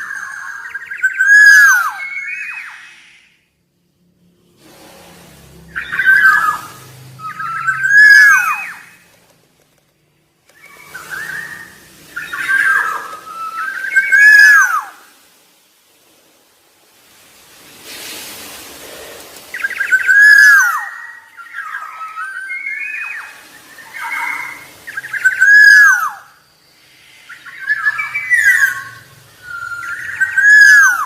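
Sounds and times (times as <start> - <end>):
bird fluty whistled song: 0.0 - 3.5, 5.7 - 9.1, 10.5 - 15.1, 19.5 - 31.0
harsh rasping bird call: 4.8 - 9.2, 10.5 - 15.2, 18.7 - 31.0.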